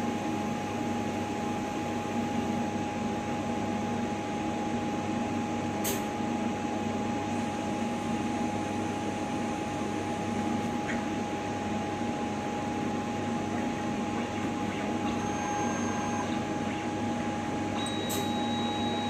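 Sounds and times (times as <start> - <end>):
metal printer humming and whining: 7.3 - 19.0.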